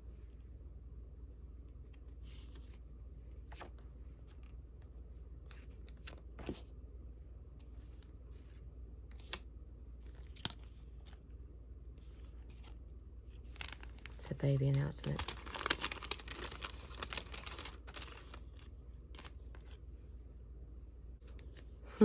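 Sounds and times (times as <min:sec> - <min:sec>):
steady low hum: 0:00.0 - 0:22.0
faint paper rustling: 0:01.7 - 0:06.8, 0:07.5 - 0:19.9, 0:21.2 - 0:22.0.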